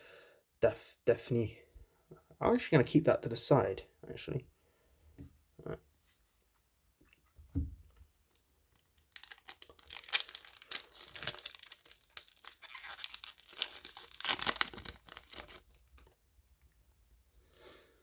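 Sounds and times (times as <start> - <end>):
foil wrapper tearing and crinkling: 9.0 - 16.2.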